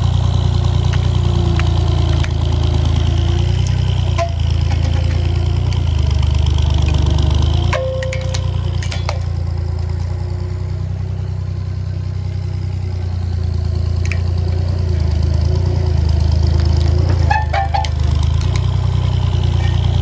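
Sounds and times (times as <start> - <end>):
road roller engine droning: 0.0 - 20.0
sharp cracks or clicks: 6.8 - 10.1.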